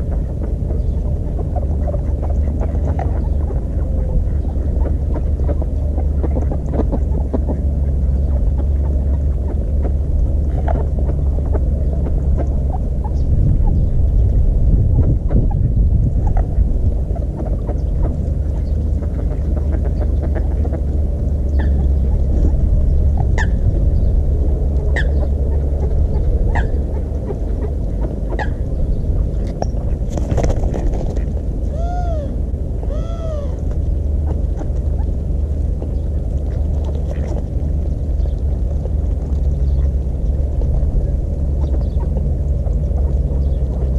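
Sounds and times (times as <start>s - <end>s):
steady low rumble: 0.0s - 43.9s
water bird calling: 16.2s - 30.0s, 31.1s - 43.9s.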